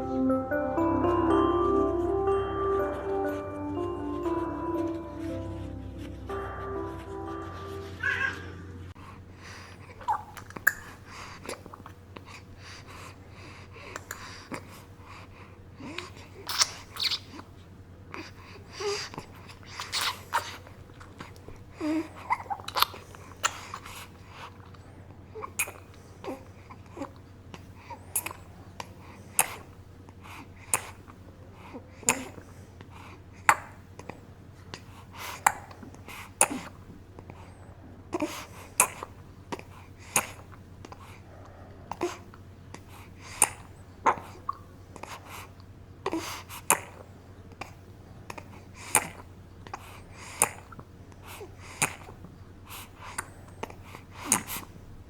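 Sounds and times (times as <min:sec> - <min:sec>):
baby sucking and swallowing: 0:09.0 - 0:17.6, 0:18.2 - 0:54.8
baby throat noises: 0:09.8 - 0:13.1, 0:15.8 - 0:17.5, 0:18.2 - 0:29.8, 0:31.7 - 0:32.5, 0:33.4 - 0:45.4, 0:46.0 - 0:54.7.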